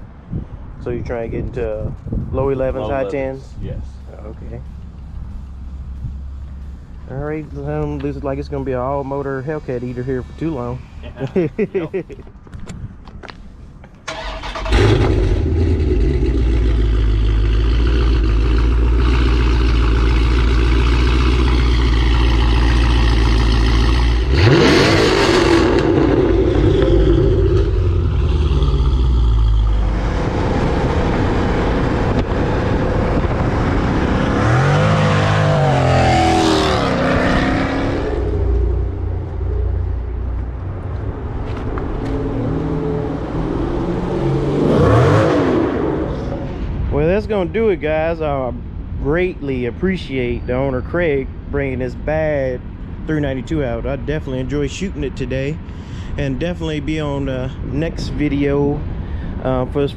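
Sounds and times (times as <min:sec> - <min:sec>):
car engine revving: 0:14.1 - 0:46.9.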